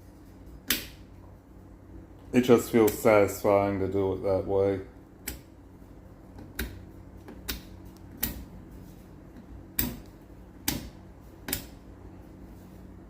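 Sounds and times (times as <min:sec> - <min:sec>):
faint low hum: 0:00.0 - 0:13.0
rotary switch clicking: 0:05.2 - 0:05.5, 0:06.3 - 0:08.5, 0:09.7 - 0:11.8.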